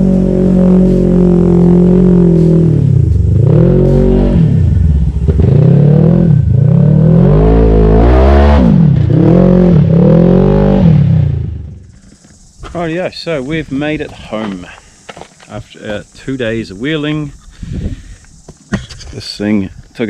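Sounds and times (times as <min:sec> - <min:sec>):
off-road vehicle engine revving: 0:00.0 - 0:14.0.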